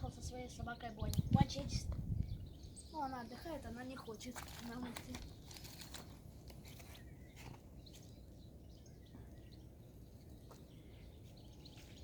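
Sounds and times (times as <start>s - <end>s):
faint bird chirps: 0.0s - 12.0s.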